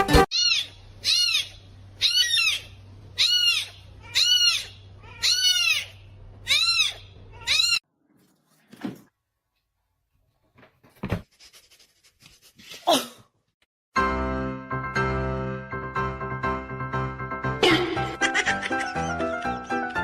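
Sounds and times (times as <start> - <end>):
small animal crying: 0.3 - 7.8.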